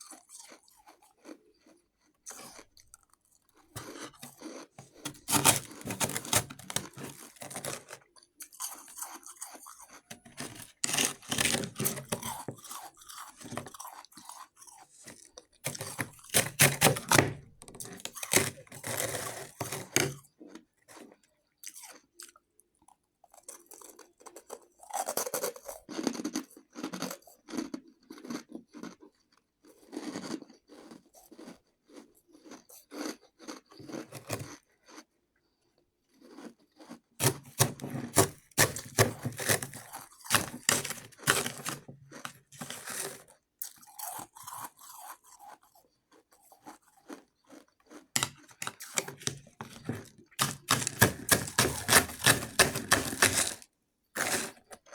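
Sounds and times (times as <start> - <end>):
shaved ice crunched and chewed: 0.0 - 54.9.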